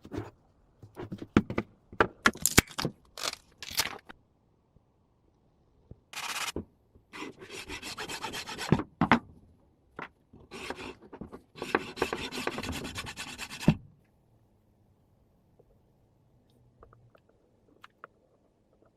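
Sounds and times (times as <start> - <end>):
file rasping: 7.2 - 8.7, 10.5 - 11.0, 11.6 - 13.7.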